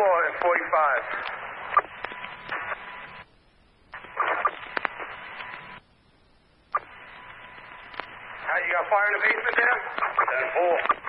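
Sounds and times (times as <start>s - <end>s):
garbled radio burst: 0.0s - 2.8s, 4.0s - 5.3s, 8.4s - 11.0s
radio scanner static and hiss: 0.0s - 11.0s
radio channel click: 1.1s - 2.9s, 3.9s - 5.6s, 6.8s - 8.2s, 9.3s - 11.0s.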